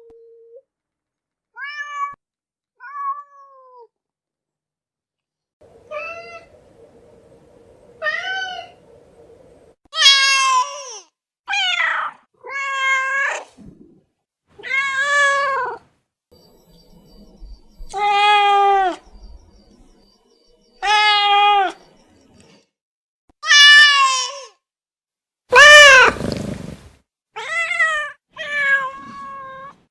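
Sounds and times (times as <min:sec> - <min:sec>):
cat meowing: 0:25.5 - 0:26.9.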